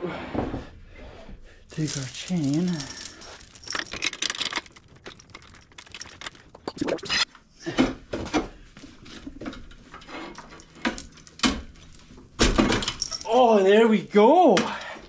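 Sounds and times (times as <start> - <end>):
metal tools clinking and clanking: 1.7 - 7.3, 9.5 - 13.4.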